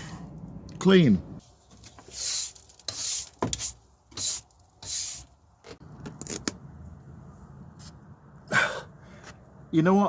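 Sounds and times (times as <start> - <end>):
short hissing strokes: 2.0 - 5.4.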